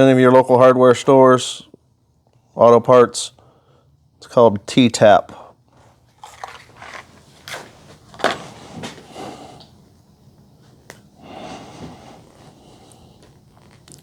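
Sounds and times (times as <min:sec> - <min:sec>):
soft handling rustles: 0:05.7 - 0:09.3.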